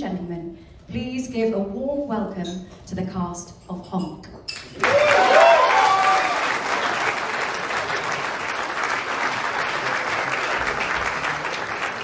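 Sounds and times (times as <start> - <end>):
audience applauding: 4.7 - 12.0.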